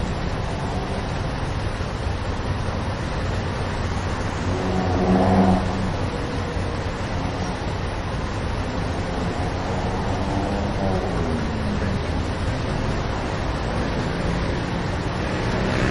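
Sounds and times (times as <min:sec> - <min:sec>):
passing vehicle: 0:00.0 - 0:15.9
traffic rumble: 0:00.0 - 0:15.9.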